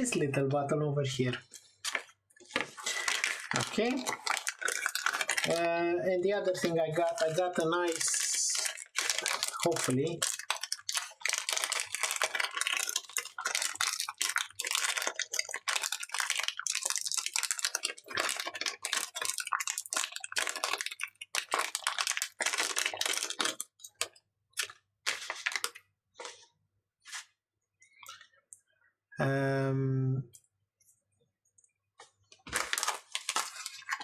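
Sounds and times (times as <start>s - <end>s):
plastic packaging crinkling: 1.3s - 26.4s, 32.3s - 34.0s.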